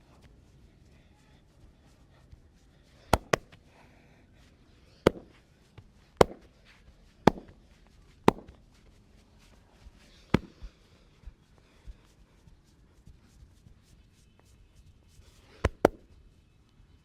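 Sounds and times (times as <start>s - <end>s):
sharp body cracks: 3.1s - 3.6s, 5.1s - 5.4s, 6.2s - 6.5s, 7.3s - 7.6s, 8.3s - 8.6s, 10.4s - 10.7s, 15.6s - 16.0s.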